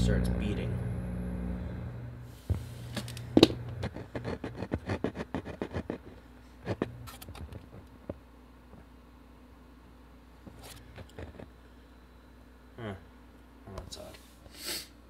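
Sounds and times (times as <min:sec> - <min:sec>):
subwoofer crackling and popping: 0:00.0 - 0:08.9
low hum: 0:00.0 - 0:13.2.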